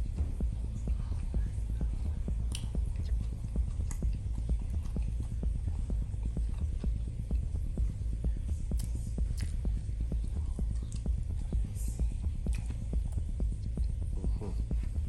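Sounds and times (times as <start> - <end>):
chewing a sandwich: 1.1 - 7.5, 8.7 - 9.7, 12.4 - 15.0.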